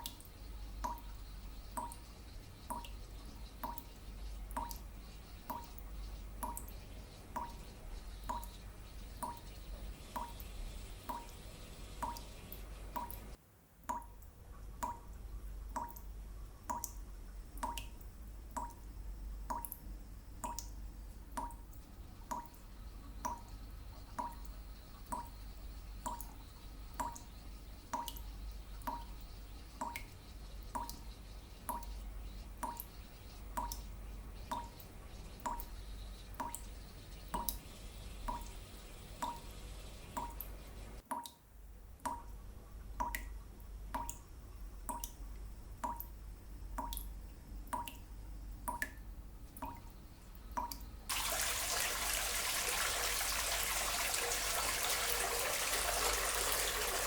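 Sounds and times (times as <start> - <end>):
water dripping plinks: 0.0 - 41.4, 42.0 - 57.0.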